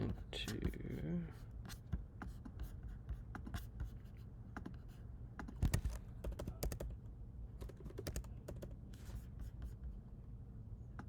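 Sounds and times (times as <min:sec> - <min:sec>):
typing on computer keyboard: 0:05.4 - 0:07.0, 0:07.6 - 0:08.8.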